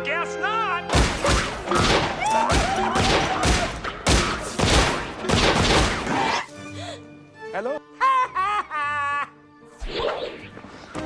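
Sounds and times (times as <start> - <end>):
gunshots volley: 0.9 - 6.4.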